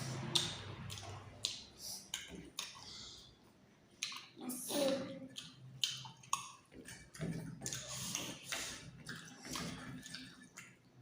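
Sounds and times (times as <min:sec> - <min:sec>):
wet chewing: 0:00.0 - 0:11.0
small mouth clicks: 0:04.0 - 0:07.0.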